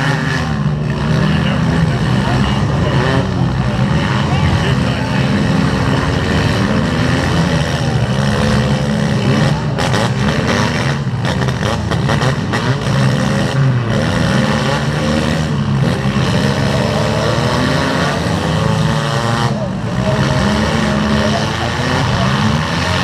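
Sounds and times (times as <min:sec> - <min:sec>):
car engines revving loudly: 0:00.0 - 0:23.0.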